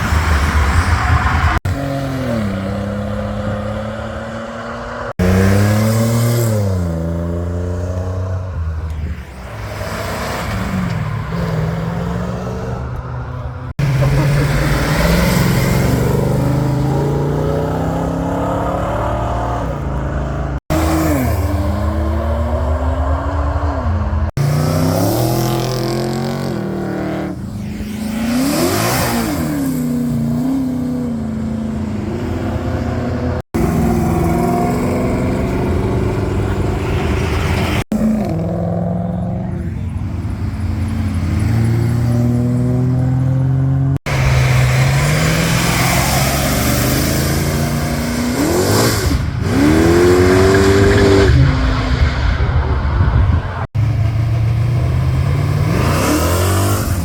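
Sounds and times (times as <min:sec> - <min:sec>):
car engines revving: 0:00.0 - 0:57.0
car accelerating hard: 0:40.7 - 0:57.0.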